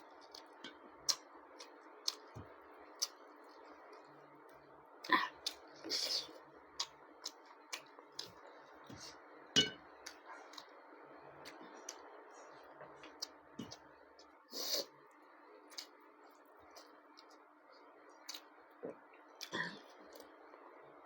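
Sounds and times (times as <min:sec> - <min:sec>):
dish clinking: 0:09.6 - 0:09.8.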